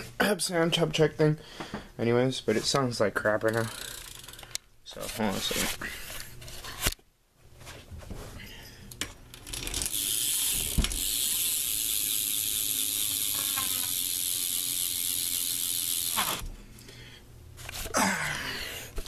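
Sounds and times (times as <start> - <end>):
bike hub ratcheting buzz: 3.4 - 4.6, 9.3 - 16.5
person talking: 4.8 - 5.8.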